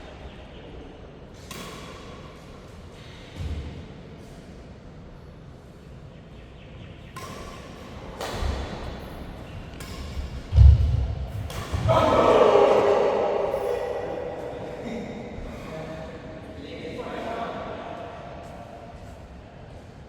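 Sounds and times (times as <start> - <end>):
heavy deep thud: 10.5 - 12.2.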